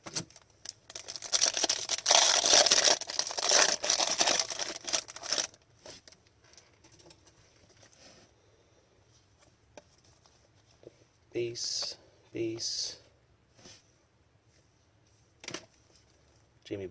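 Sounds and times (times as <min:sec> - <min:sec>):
foil pack tearing and crinkling: 0:00.1 - 0:06.2.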